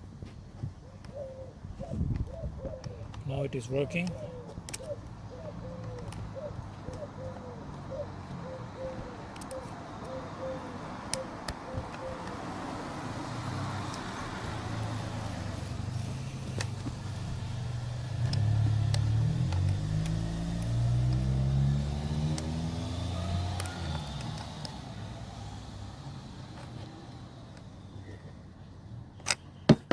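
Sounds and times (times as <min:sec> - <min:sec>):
vehicle engine running: 0:12.2 - 0:20.0.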